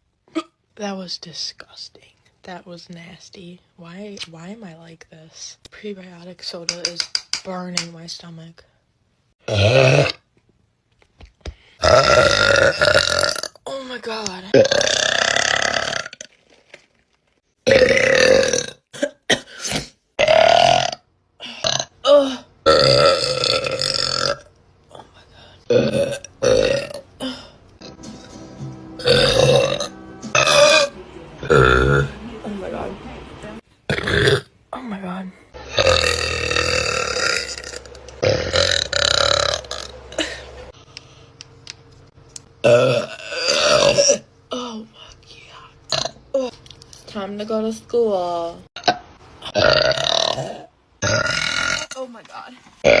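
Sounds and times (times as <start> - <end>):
woman burping: 0.3 - 0.6, 9.4 - 10.2, 11.8 - 13.9, 14.5 - 16.2, 17.7 - 24.5, 25.7 - 28.0, 29.0 - 32.2, 33.9 - 34.5, 35.6 - 40.7, 42.6 - 44.8, 45.9 - 46.5, 48.8 - 52.0.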